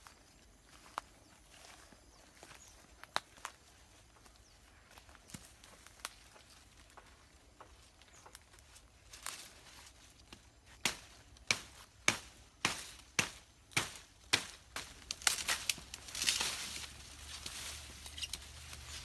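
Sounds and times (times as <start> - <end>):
wood being chopped: 10.8 - 16.6.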